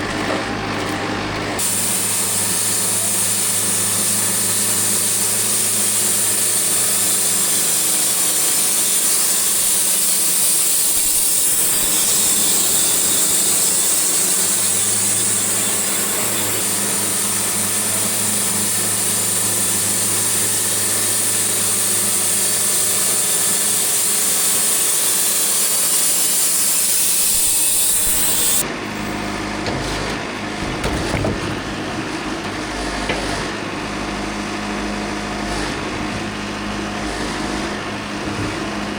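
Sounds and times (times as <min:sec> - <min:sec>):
sawmill engine drone: 0:00.0 - 0:38.9
band saw blade hissing in wood: 0:01.6 - 0:28.6
knocks: 0:29.6 - 0:31.7.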